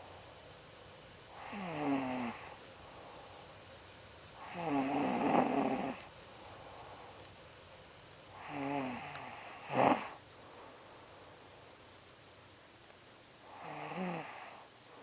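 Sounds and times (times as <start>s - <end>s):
person snoring: 1.3s - 2.6s, 4.4s - 6.1s, 8.4s - 10.2s, 13.5s - 14.7s.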